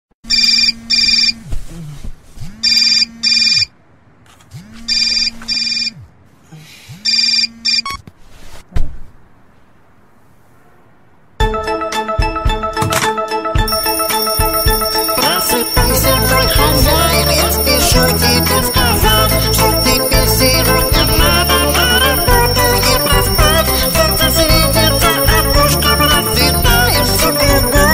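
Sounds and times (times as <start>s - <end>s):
telephone ringing: 0.3s - 1.4s, 2.7s - 3.7s, 4.9s - 5.9s, 12.8s - 27.9s
music with jingling bells: 13.7s - 27.9s.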